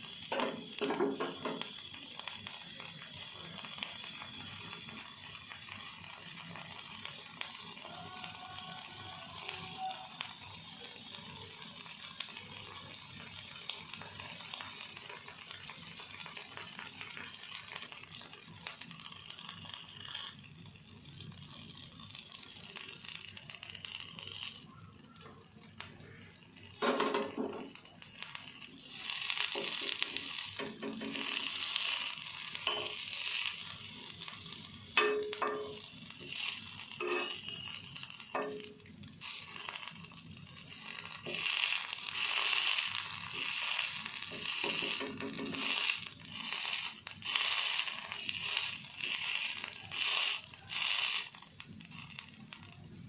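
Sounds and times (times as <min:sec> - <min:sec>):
food sizzling in a pan: 0:00.0 - 0:53.0.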